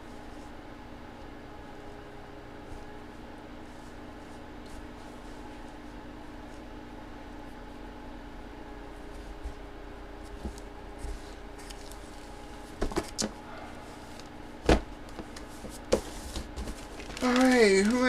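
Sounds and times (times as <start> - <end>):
electrical hum: 0.0 - 18.0.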